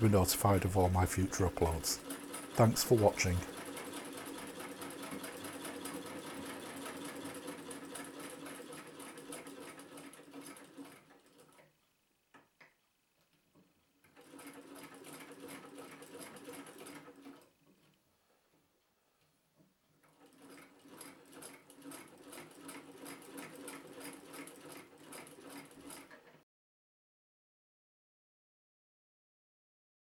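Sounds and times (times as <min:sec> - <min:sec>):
sewing machine stitching: 0:01.2 - 0:11.7, 0:13.6 - 0:18.0, 0:20.0 - 0:26.4
sewing machine clicks: 0:02.0 - 0:11.7, 0:13.5 - 0:18.0, 0:20.0 - 0:26.4.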